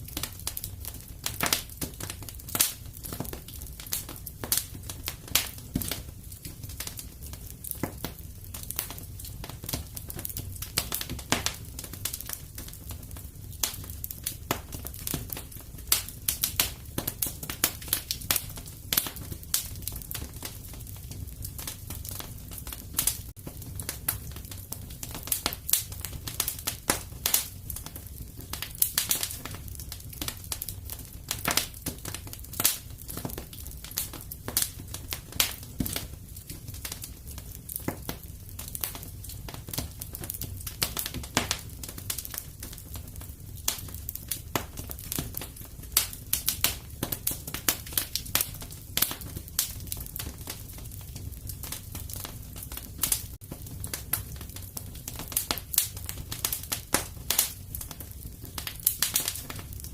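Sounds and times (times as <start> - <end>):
fire crackling and popping: 0.0 - 59.9
fire rumbling: 0.0 - 59.9.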